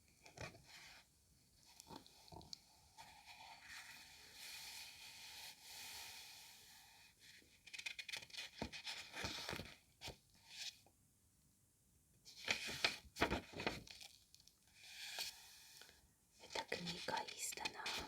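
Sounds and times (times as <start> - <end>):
book pages rustling: 7.6 - 10.7, 12.3 - 14.3, 16.6 - 18.0
crisp paper crackles and flicks: 12.3 - 14.4, 16.7 - 18.0.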